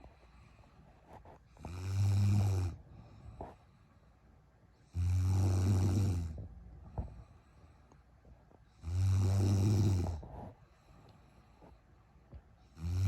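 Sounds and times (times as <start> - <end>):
woman snoring: 1.6 - 2.8, 4.9 - 6.4, 8.8 - 10.3, 12.8 - 13.0.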